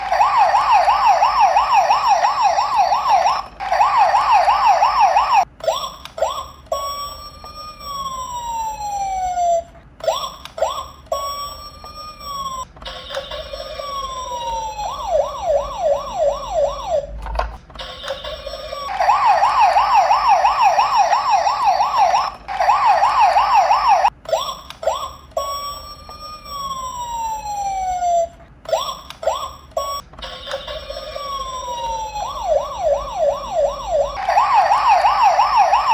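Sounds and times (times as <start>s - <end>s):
siren tone sliding down: 0.0s - 5.4s, 14.7s - 17.3s, 18.9s - 24.1s, 31.7s - 35.9s
electronic siren yelping: 0.0s - 5.5s, 13.7s - 17.2s, 18.9s - 24.1s, 30.7s - 35.9s.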